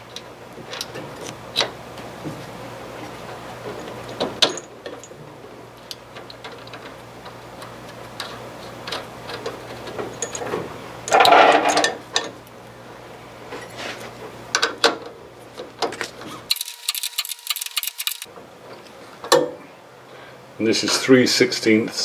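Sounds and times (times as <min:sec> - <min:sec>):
metallic clicks of hand tools: 0:16.5 - 0:18.3.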